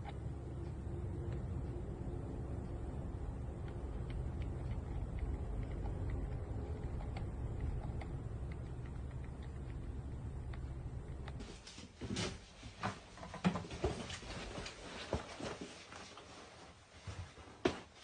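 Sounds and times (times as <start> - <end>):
steady low hum: 0.0 - 12.0.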